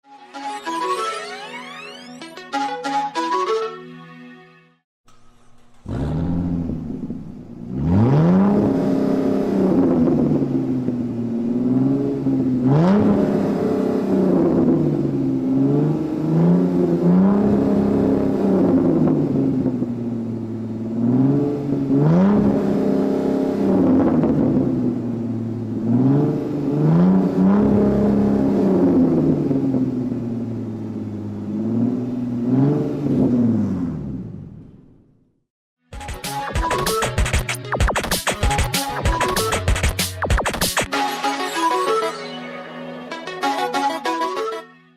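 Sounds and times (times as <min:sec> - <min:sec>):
supercar engine revving: 0:05.1 - 0:34.8.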